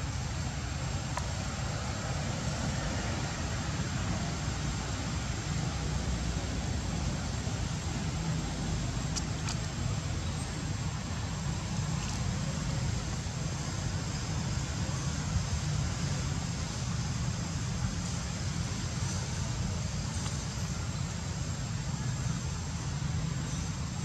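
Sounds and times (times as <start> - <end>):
faint clicks: 9.1 - 9.7.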